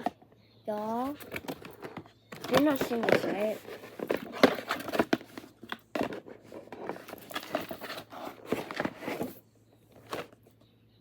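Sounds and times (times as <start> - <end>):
packaging rustling and clicking: 1.1 - 9.4.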